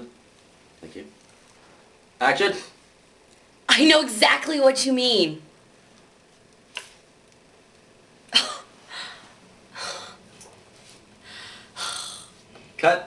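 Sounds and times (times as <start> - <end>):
noisy breaths: 8.8 - 12.5.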